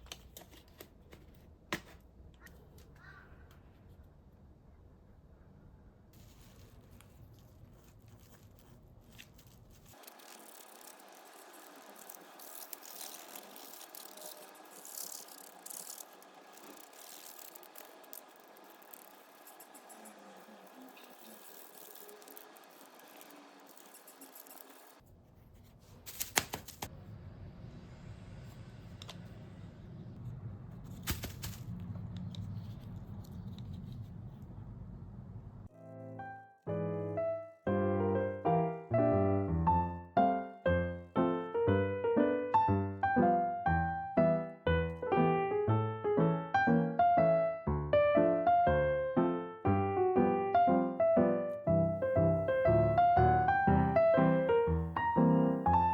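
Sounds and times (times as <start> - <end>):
rustling and scraping hiss: 6.2 - 26.9, 30.8 - 34.4
plastic parts rattling and clicking: 6.9 - 25.0
piano music: 35.7 - 55.9.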